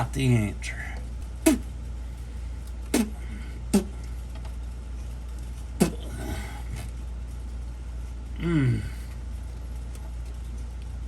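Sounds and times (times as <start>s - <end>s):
steady low hum: 0.0s - 11.0s
person groaning with effort: 8.4s - 9.0s.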